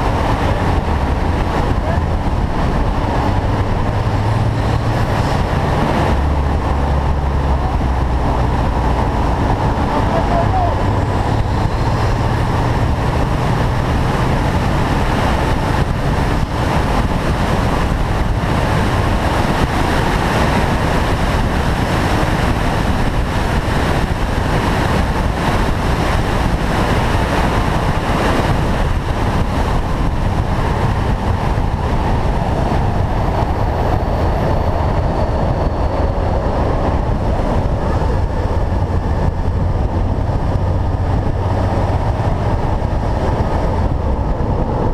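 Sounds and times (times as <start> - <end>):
car driving at steady speed: 0.0 - 44.9.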